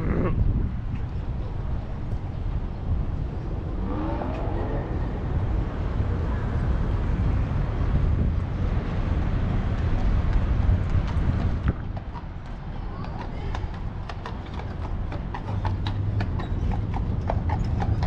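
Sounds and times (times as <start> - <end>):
low rumble: 2.2 - 11.8
horse hooves clip-clopping: 9.2 - 18.0.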